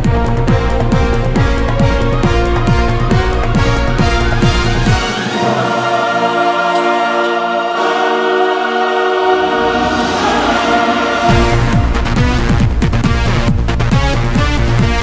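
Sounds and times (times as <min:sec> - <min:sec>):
drum beat: 0:00.0 - 0:05.2, 0:10.2 - 0:15.0
sustained chords: 0:00.0 - 0:15.0.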